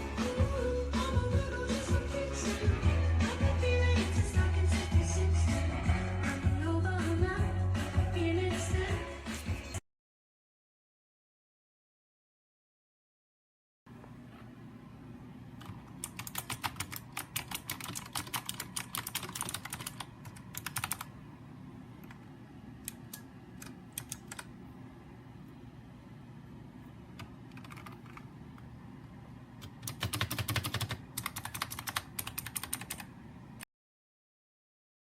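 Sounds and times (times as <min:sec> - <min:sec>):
keyboard typing: 0:15.6 - 0:21.1, 0:22.8 - 0:24.5, 0:27.2 - 0:28.3, 0:29.6 - 0:33.1.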